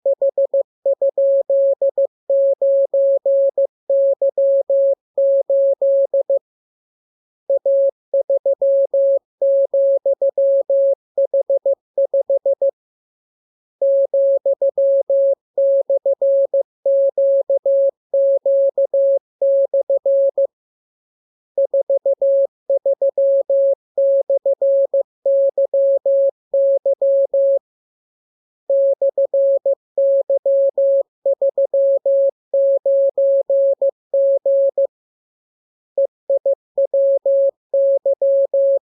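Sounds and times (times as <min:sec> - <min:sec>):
morse code beeps: 0:13.8 - 0:20.5, 0:21.6 - 0:27.6, 0:28.7 - 0:34.9, 0:36.3 - 0:38.8.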